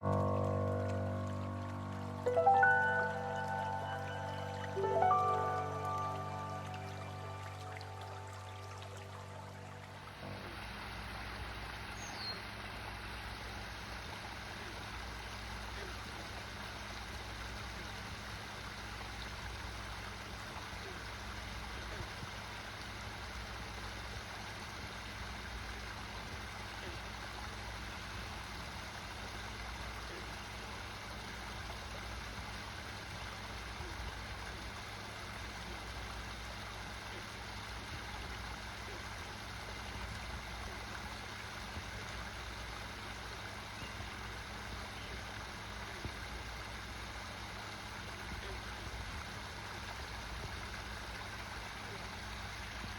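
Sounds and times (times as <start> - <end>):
waterfall splashing: 0.0 - 22.0
low steady hum: 0.0 - 52.9.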